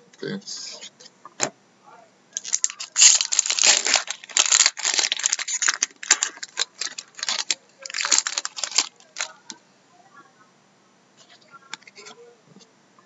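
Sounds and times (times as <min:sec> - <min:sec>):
foil wrapper tearing and crinkling: 0:02.4 - 0:09.4.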